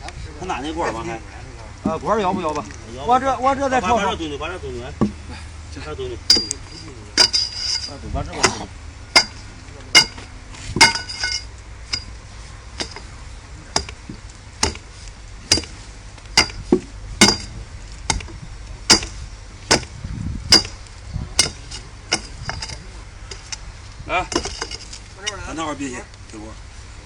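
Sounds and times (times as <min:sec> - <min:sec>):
hammer blows on metal: 0:16.4 - 0:23.6.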